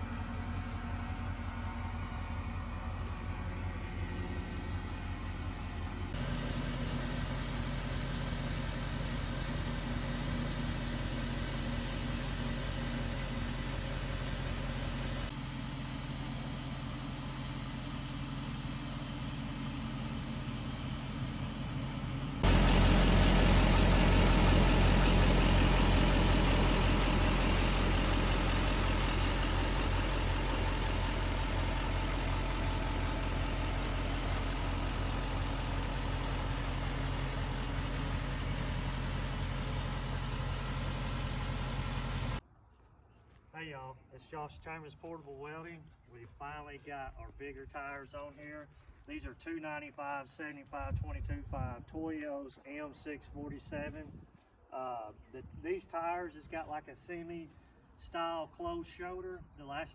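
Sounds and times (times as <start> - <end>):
truck engine idling: 0.0 - 42.4.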